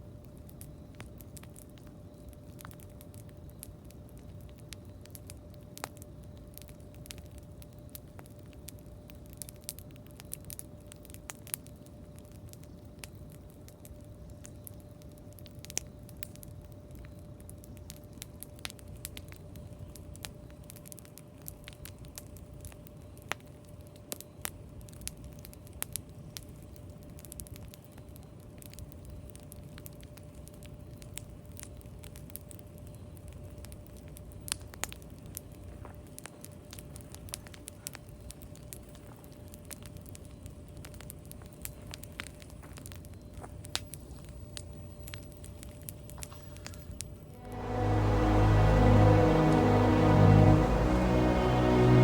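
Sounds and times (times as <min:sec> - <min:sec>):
faint steady hum: 0:00.0 - 0:39.6, 0:40.2 - 0:52.0
campfire crackling and popping: 0:00.0 - 0:52.0
low rumble: 0:47.4 - 0:52.0.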